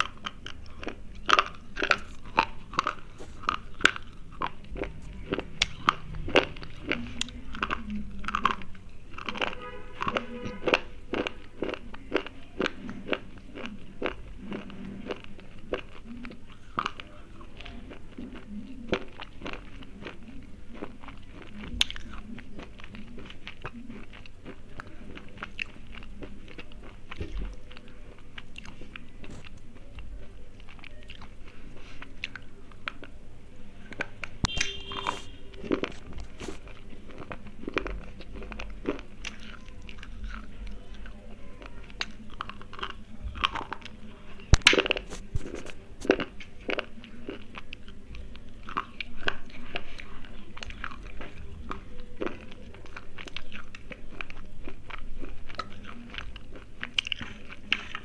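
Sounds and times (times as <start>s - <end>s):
slate pencils crunching: 34.4s - 40.5s.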